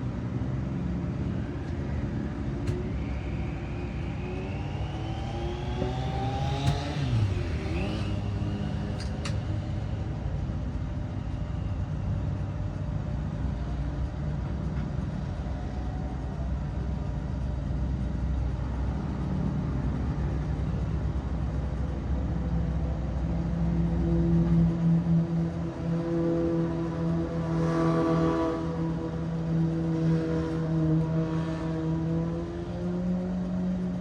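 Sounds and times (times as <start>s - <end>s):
low engine rumble: 0.0s - 27.1s.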